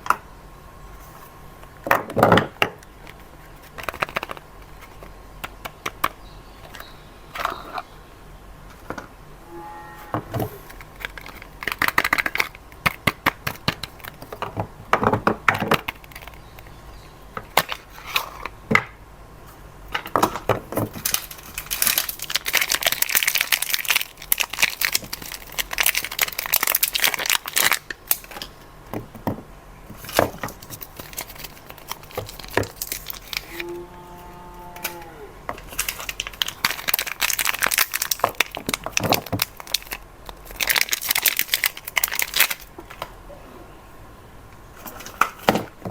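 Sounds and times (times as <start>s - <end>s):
wrappers crinkling and tearing: 21.0s - 28.5s, 30.0s - 42.8s.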